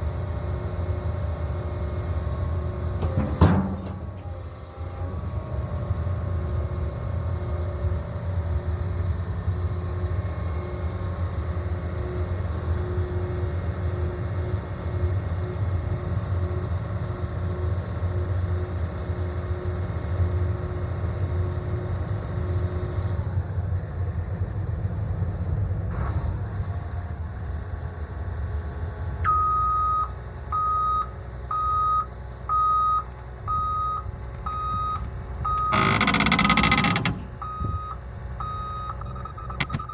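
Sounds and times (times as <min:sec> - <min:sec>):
diesel engine running: 0:00.0 - 0:23.8, 0:28.3 - 0:39.9
reversing alarm beeping: 0:29.3 - 0:39.9.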